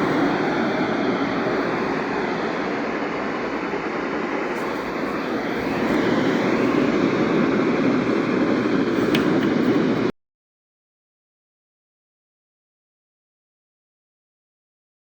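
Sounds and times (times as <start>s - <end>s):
radio static hiss: 0.0s - 10.1s.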